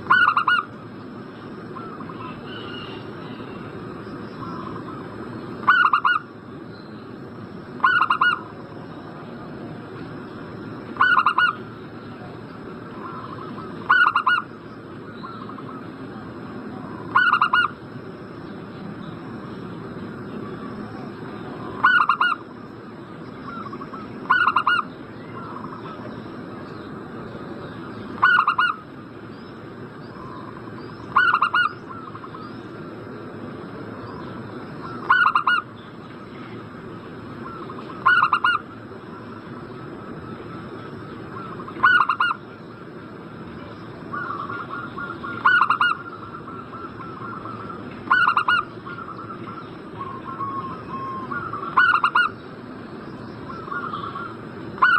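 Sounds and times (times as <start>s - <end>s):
dove cooing: 0.0s - 0.7s, 5.6s - 6.3s, 7.8s - 8.5s, 11.0s - 11.6s, 12.9s - 14.5s, 16.7s - 17.8s, 20.5s - 22.4s, 23.4s - 26.1s, 28.2s - 28.9s, 30.2s - 32.5s, 34.8s - 35.7s, 37.4s - 40.3s, 41.2s - 42.4s, 43.6s - 52.4s, 53.5s - 54.9s
faint rapid bird call: 0.0s - 7.2s, 7.8s - 17.8s, 33.9s - 54.9s.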